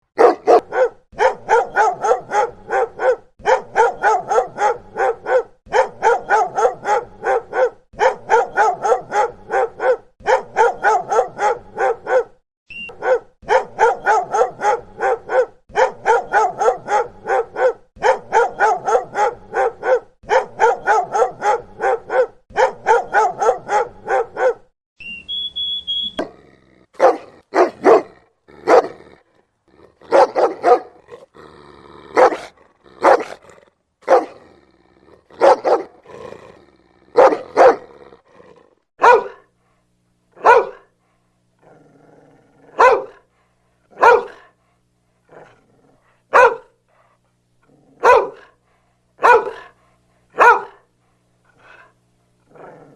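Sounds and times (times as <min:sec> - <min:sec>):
dog barking: 0:00.2 - 0:24.7, 0:27.0 - 0:29.0, 0:30.0 - 0:31.2, 0:32.2 - 0:34.4, 0:35.3 - 0:36.1, 0:37.1 - 0:37.9, 0:39.0 - 0:39.5, 0:40.4 - 0:40.9, 0:42.7 - 0:43.3, 0:43.9 - 0:44.6, 0:46.2 - 0:46.8, 0:48.0 - 0:48.6, 0:49.2 - 0:50.9, 0:51.6 - 0:51.9.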